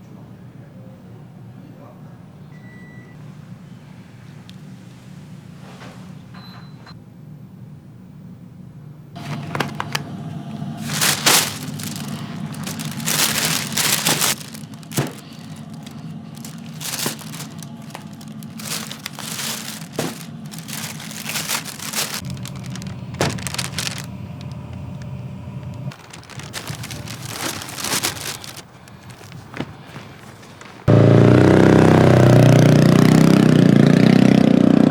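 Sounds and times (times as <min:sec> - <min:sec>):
steady low hum: 0:07.0 - 0:30.9
crinkling and rustling: 0:09.2 - 0:30.9.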